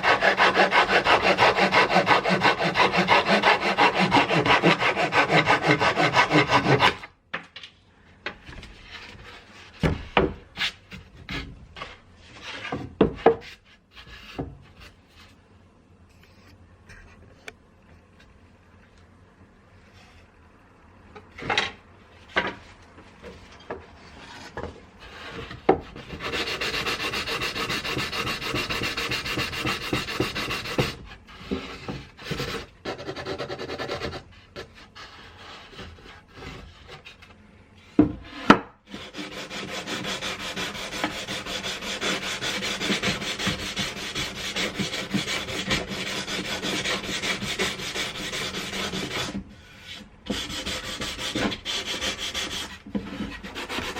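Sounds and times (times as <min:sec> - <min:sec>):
hand-sanding wood: 0:00.0 - 0:07.1, 0:24.2 - 0:37.0, 0:38.4 - 0:53.9.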